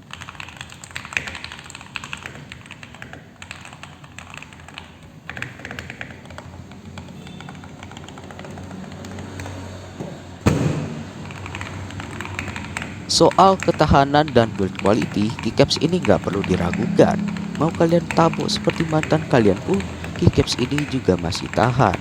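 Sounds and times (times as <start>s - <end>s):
mechanical keyboard typing: 0.0s - 9.6s, 11.2s - 22.0s
loud thump: 10.4s - 11.2s.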